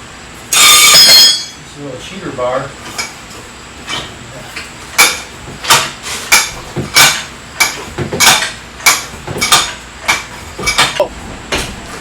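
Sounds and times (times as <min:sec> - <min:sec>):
steel tool clanking on metal: 0:00.5 - 0:01.6, 0:05.0 - 0:11.1.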